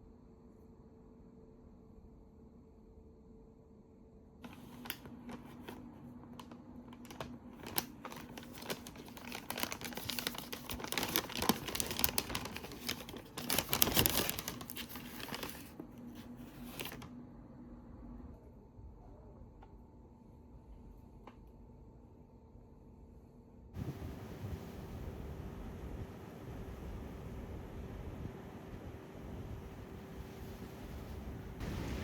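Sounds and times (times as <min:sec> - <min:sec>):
crinkling and rustling: 0:04.4 - 0:17.1.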